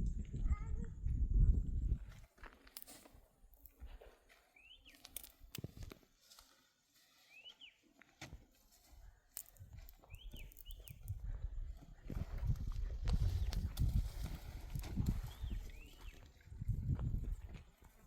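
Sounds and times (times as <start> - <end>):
bird chirping: 4.5 - 5.3, 7.3 - 7.8, 9.4 - 11.2, 15.2 - 16.3.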